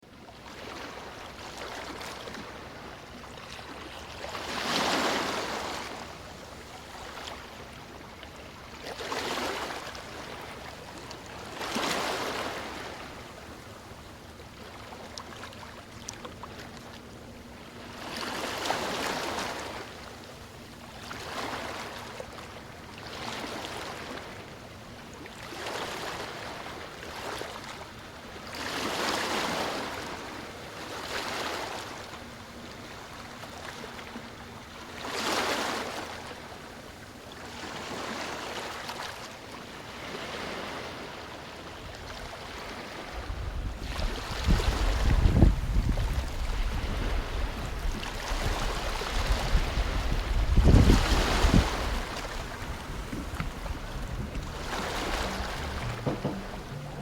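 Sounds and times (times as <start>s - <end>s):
waves washing in: 0.4s - 15.6s, 33.5s - 57.0s.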